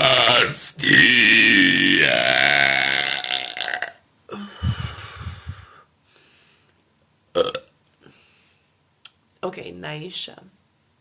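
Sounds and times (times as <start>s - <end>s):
girl burping: 0.0s - 4.9s, 7.4s - 7.7s.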